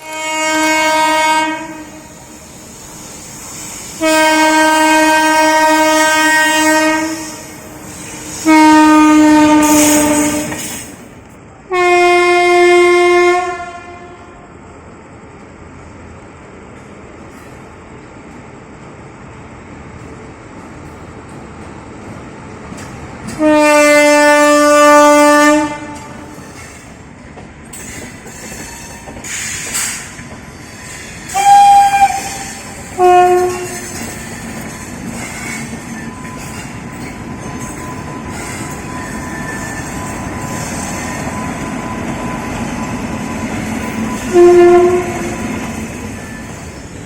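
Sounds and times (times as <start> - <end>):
locomotive horn blasts: 0.0 - 2.2, 4.0 - 7.7, 8.3 - 10.6, 11.7 - 14.4, 23.4 - 26.4, 31.3 - 34.0, 44.1 - 45.7
train rumble and wheel clatter: 0.0 - 47.0.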